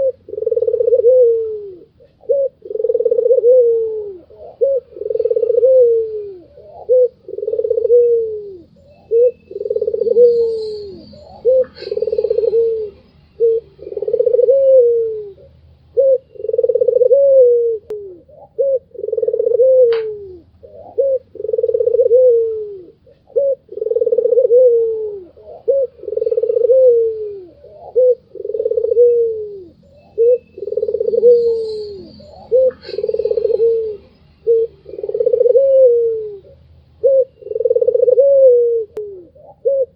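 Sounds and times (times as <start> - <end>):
dove cooing: 0.0 - 39.9
faint high chirps: 8.8 - 14.0, 29.9 - 34.6.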